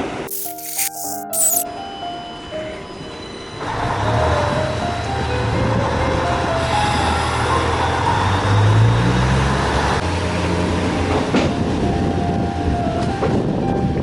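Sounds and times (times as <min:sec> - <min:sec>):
train rumbling on rails: 0:03.6 - 0:14.0.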